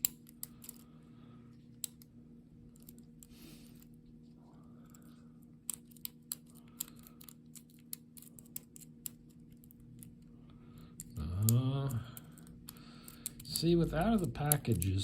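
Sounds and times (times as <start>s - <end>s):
lock pick metallic clicks: 12.2s - 15.0s.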